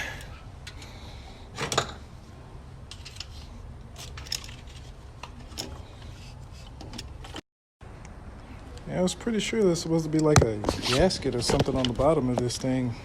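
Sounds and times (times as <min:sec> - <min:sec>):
metal parts clicking and clinking: 0:02.9 - 0:05.8.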